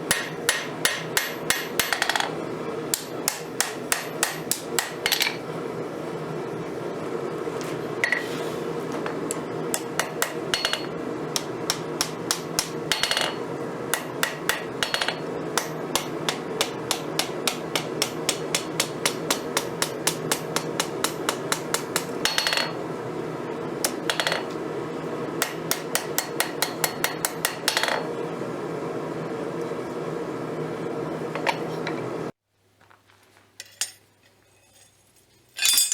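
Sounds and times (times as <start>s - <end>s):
hammer striking steel on anvil: 0.0s - 2.3s, 2.9s - 5.4s, 9.3s - 22.8s, 25.4s - 28.0s.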